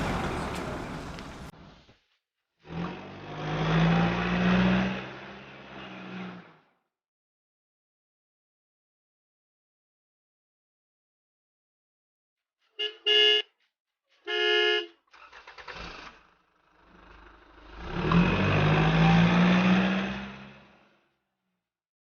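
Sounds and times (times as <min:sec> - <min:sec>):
truck engine starting and running: 0:00.0 - 0:01.9, 0:02.7 - 0:06.6, 0:15.1 - 0:21.0
truck horn honking: 0:12.8 - 0:13.6, 0:14.3 - 0:15.4.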